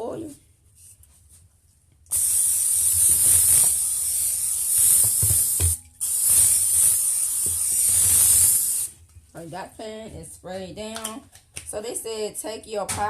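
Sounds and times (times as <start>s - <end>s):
aerosol spray hissing: 2.1s - 9.0s.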